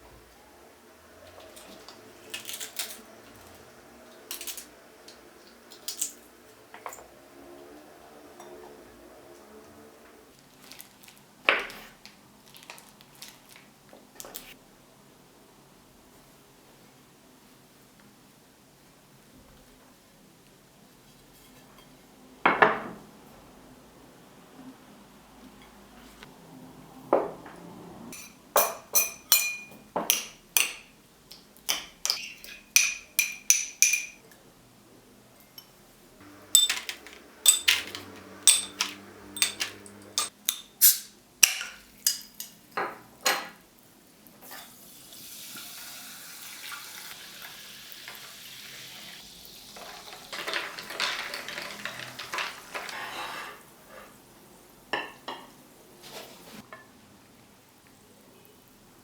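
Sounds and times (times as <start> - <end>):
metal utensil clinking dishes: 28.1 - 30.9, 31.7 - 34.3, 35.6 - 43.6.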